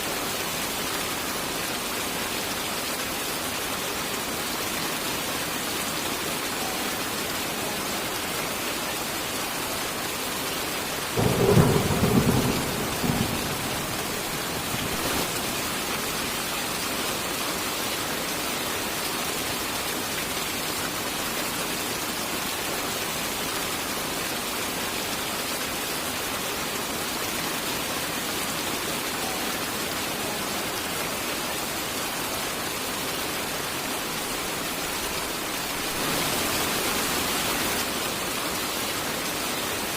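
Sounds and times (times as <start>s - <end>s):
steady rain hiss: 0.0s - 39.9s
thunderclap rumbling: 11.2s - 15.5s.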